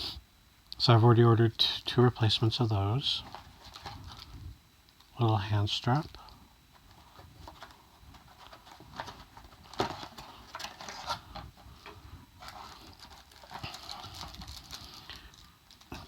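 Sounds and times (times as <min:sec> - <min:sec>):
packaging rustling: 0:03.2 - 0:04.4, 0:06.7 - 0:16.0.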